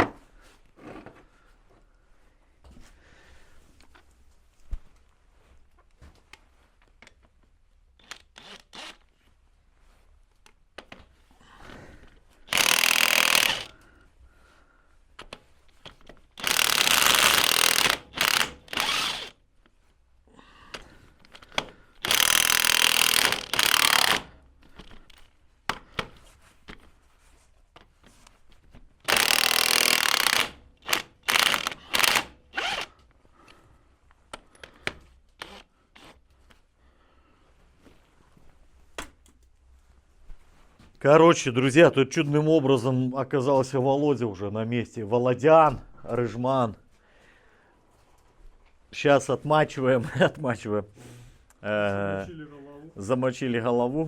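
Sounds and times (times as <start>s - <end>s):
power tool running in bursts: 12.5s - 13.7s, 16.4s - 19.3s, 22.0s - 24.3s, 29.1s - 32.9s.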